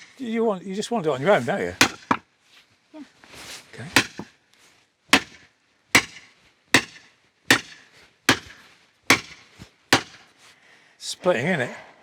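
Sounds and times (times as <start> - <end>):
hammer striking steel wedge: 1.8 - 2.2, 6.0 - 6.2, 6.8 - 9.4, 10.0 - 10.2.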